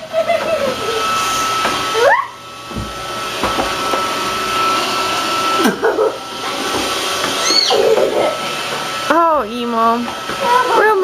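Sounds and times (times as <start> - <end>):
robot vacuum whirring: 0.0 - 11.0.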